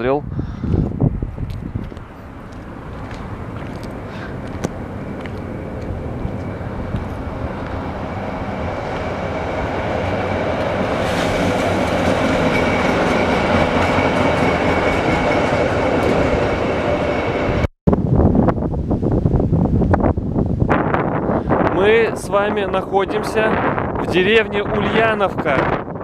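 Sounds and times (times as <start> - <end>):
train rumbling past: 0.8 - 17.7
thin steady whine: 2.2 - 10.9.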